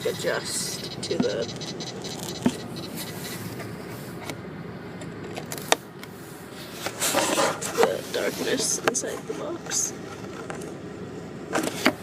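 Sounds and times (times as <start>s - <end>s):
road rumble inside car: 0.0s - 12.0s
sharp clicks: 0.8s - 3.2s.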